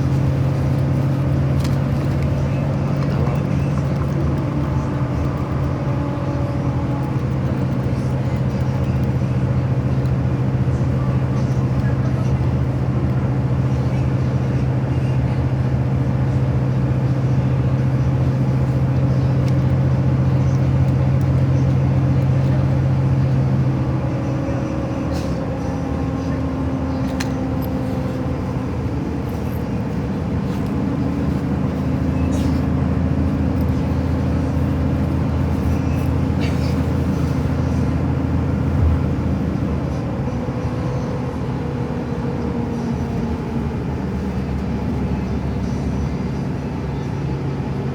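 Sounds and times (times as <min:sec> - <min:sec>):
vehicle engine and road noise: 0:00.0 - 0:47.9.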